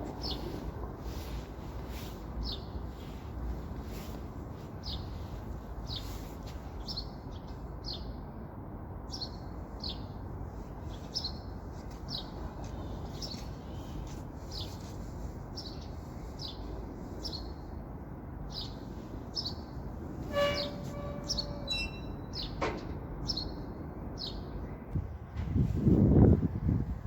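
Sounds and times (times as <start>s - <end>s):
bird chirping: 20.3s - 22.6s.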